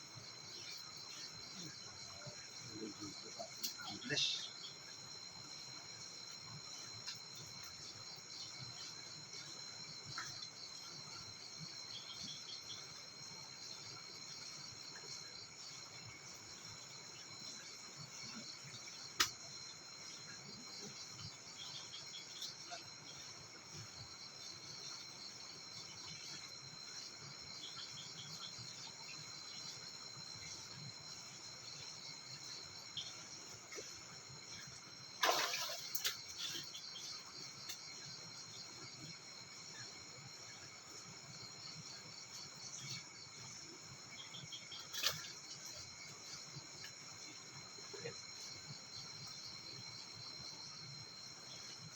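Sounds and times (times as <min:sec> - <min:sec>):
crickets and insects chorus: 0:00.0 - 0:51.9.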